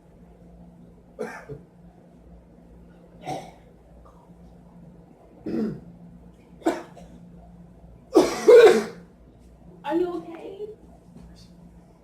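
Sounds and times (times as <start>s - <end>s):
young man coughing hard: 1.2s - 1.6s, 3.2s - 3.6s, 5.4s - 5.8s, 6.6s - 7.2s, 8.1s - 9.1s.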